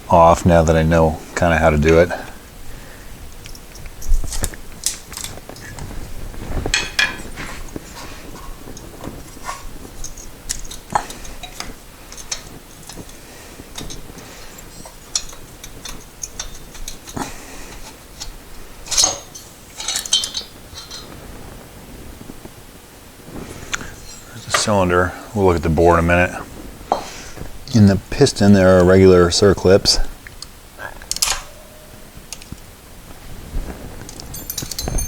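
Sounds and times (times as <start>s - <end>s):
metallic clinks of tools: 34.3s - 35.0s.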